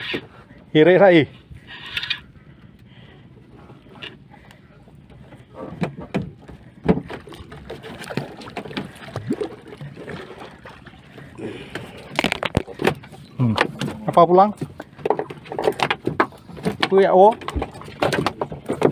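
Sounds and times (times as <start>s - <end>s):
water splashing against boat hull: 5.1s - 18.9s.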